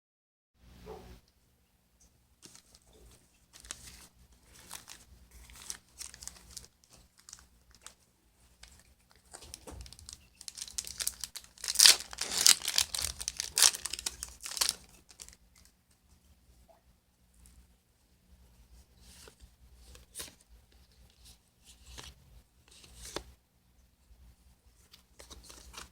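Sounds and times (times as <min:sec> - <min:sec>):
foil wrapper crinkling and tearing: 0:03.5 - 0:15.8.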